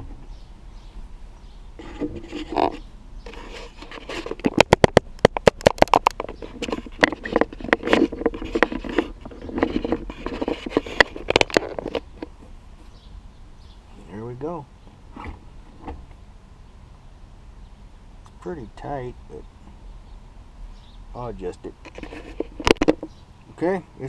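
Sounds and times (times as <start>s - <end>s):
shift knob scraping and rubbing: 6.3s - 12.5s, 21.9s - 23.1s.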